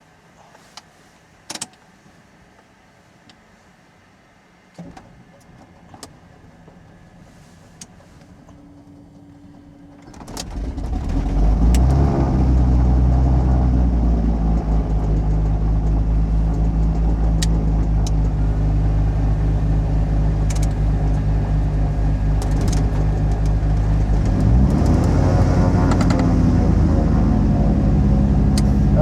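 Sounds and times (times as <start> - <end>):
piston engine starting and idling: 8.4 - 29.0
sharp clicks: 20.4 - 21.2.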